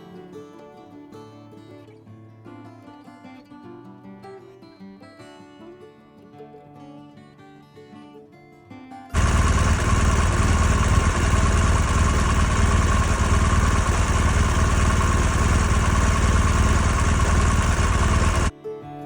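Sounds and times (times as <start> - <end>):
steady whine: 9.2 - 18.5
vehicle engine droning: 9.2 - 18.5
music: 18.6 - 19.0.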